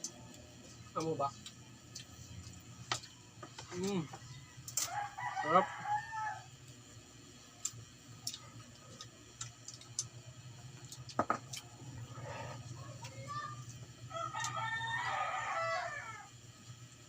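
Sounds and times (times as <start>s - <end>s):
rooster crowing: 3.8s - 6.6s, 14.1s - 16.4s.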